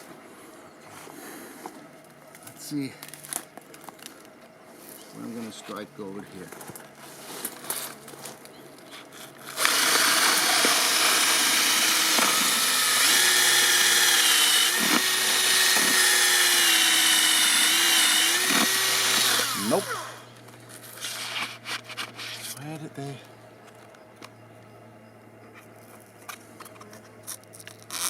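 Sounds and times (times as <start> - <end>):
power drill boring into wood: 9.4 - 20.3.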